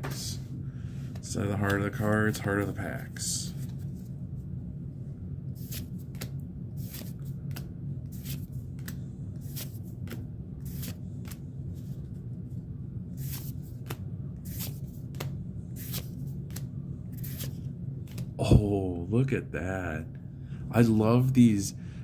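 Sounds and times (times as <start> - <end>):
steady low hum: 0.0 - 22.0
cards flicking and sliding: 5.6 - 12.0, 13.2 - 18.4.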